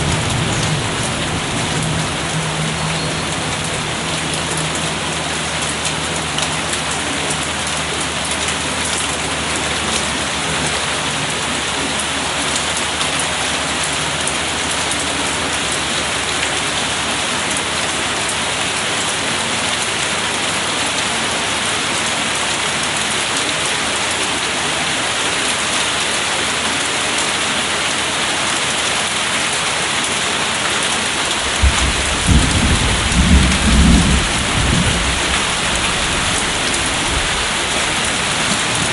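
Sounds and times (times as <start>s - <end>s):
steady rain falling: 0.0s - 38.9s
low roll of thunder: 31.4s - 38.9s.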